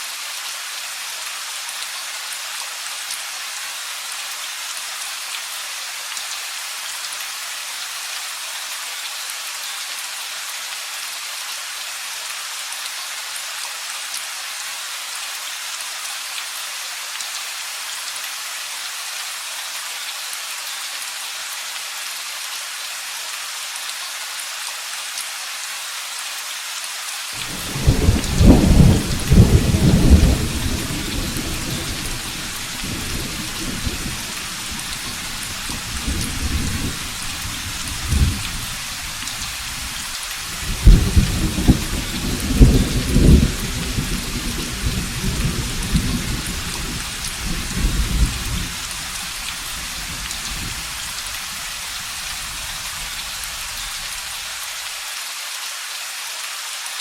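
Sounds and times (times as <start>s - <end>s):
steady rain falling: 0.0s - 57.0s
thunder rumbling: 27.4s - 40.0s, 40.6s - 48.9s.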